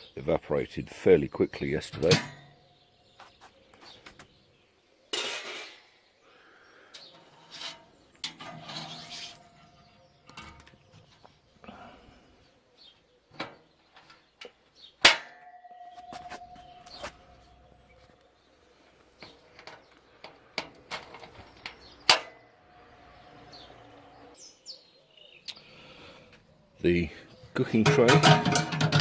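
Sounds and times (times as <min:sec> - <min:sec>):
metal knocks and scraping: 0:07.0 - 0:11.3, 0:15.0 - 0:18.1, 0:19.2 - 0:22.5, 0:27.6 - 0:29.0
sharp ringing metal clank: 0:15.1 - 0:18.0.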